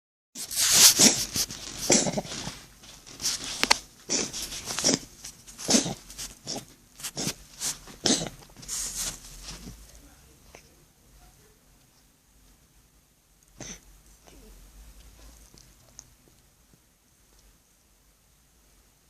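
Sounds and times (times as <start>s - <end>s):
cat coughing: 4.1s - 7.4s, 8.0s - 8.5s.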